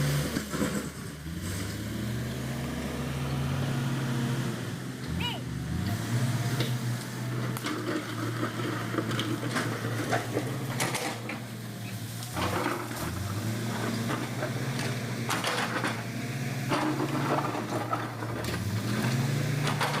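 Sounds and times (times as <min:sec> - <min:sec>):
bulldozer diesel engine: 0:00.0 - 0:20.0
metallic clanks and rattles: 0:06.6 - 0:20.0.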